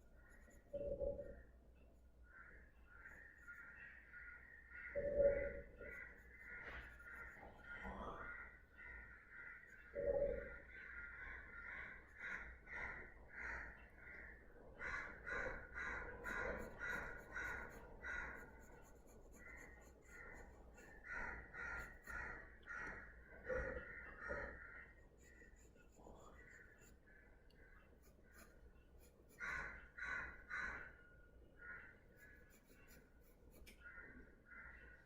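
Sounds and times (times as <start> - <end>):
pencil scratching on paper: 5.8 - 7.9, 15.5 - 22.5, 23.5 - 27.0, 28.0 - 30.4, 32.1 - 33.8.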